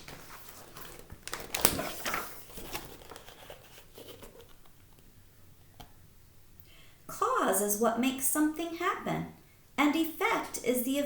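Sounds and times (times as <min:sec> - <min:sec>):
crisp paper crinkles: 0:00.0 - 0:04.9
paper rustling: 0:00.0 - 0:05.0.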